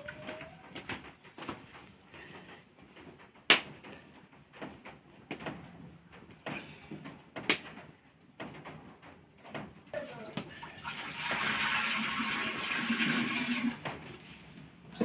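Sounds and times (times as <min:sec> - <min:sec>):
knocks and clatter: 0:00.0 - 0:10.0.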